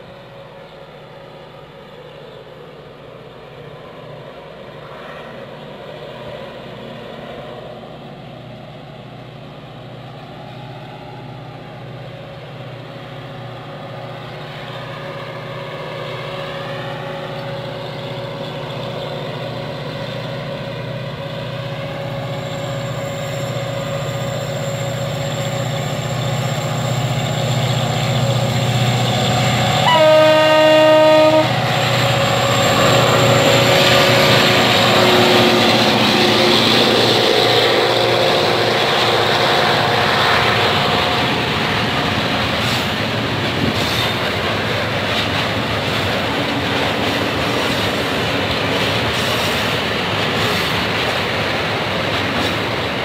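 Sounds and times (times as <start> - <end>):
diesel locomotive engine hum: 0.0 - 53.0
locomotive horn blast: 29.8 - 31.7.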